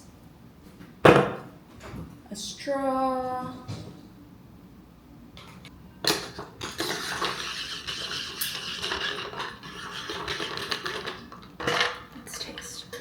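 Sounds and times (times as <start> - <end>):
sharp knock: 1.0 - 1.5.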